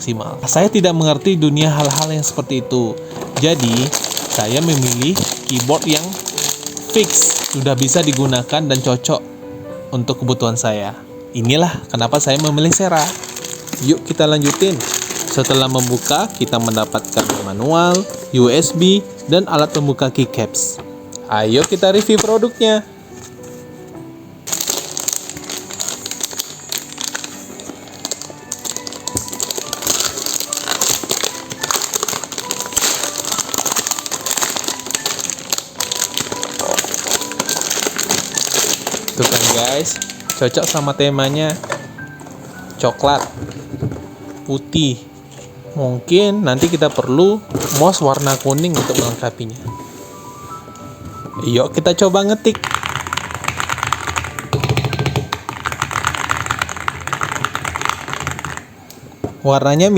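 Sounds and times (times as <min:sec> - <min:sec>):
quiet background music: 0:00.0 - 0:59.9
packaging crinkling: 0:00.4 - 0:09.2, 0:10.2 - 0:58.9
keyboard clicks and knocks: 0:52.5 - 0:59.4.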